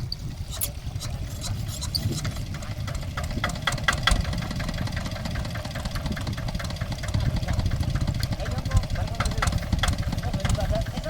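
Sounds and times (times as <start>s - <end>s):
diesel engine rumbling with knocks: 0.0s - 11.0s.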